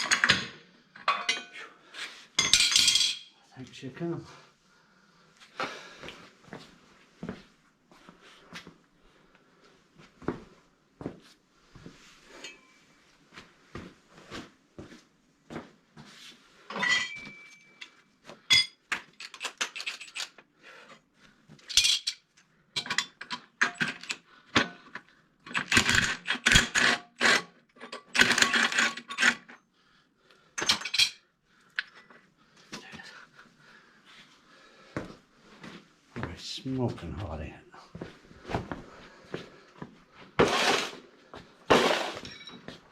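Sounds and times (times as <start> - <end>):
metal tools clanking: 0.0 - 1.7, 16.7 - 20.3, 21.6 - 24.1, 41.7 - 42.8.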